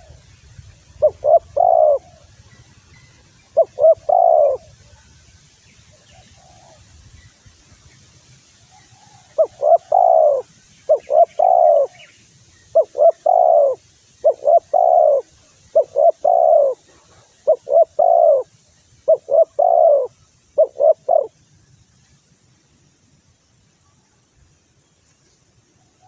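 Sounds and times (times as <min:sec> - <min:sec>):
dove cooing: 0:00.0 - 0:00.2, 0:01.0 - 0:02.6, 0:03.5 - 0:05.0, 0:06.1 - 0:06.8, 0:09.0 - 0:12.1, 0:12.7 - 0:21.4.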